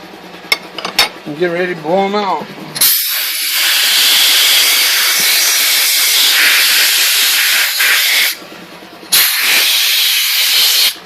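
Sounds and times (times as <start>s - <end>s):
compressed air hissing from nozzle: 2.8s - 8.4s, 9.1s - 11.0s.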